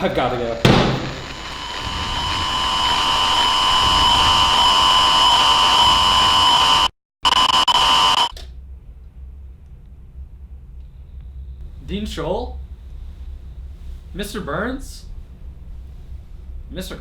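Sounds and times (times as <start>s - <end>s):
electronic buzzing tone: 0.0s - 8.4s.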